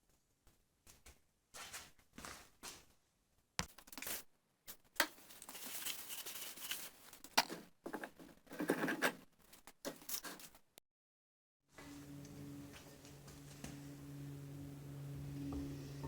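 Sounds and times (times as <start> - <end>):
rustling and scraping: 3.9 - 10.6.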